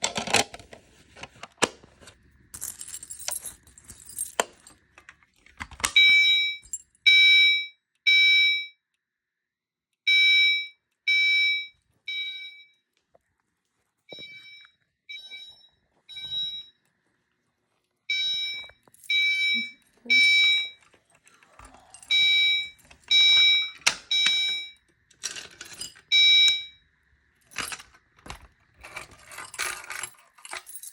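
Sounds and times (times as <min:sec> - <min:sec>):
fire alarm chime tones: 0:06.0 - 0:08.8, 0:10.1 - 0:12.8, 0:14.1 - 0:16.8, 0:18.1 - 0:20.8, 0:22.1 - 0:24.8, 0:26.1 - 0:26.8.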